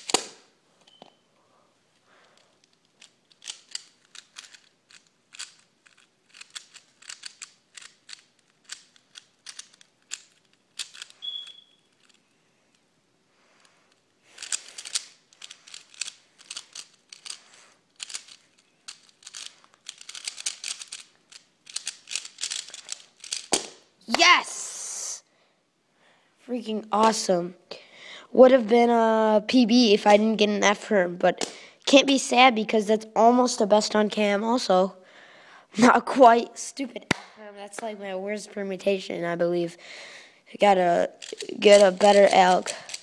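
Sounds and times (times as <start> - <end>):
puzzle cube plastic clicks: 0.0 - 1.2, 2.2 - 12.9, 13.6 - 24.3, 40.7 - 43.0.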